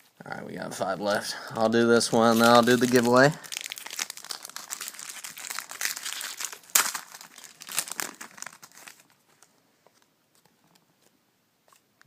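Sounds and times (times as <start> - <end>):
wrapper ripping: 2.0 - 9.5
card pack wrapper crinkling: 2.0 - 10.1.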